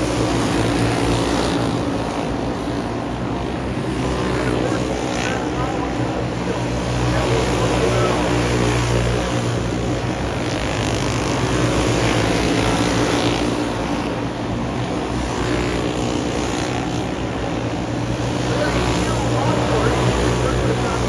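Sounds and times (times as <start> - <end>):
race car engines droning: 0.0 - 21.0.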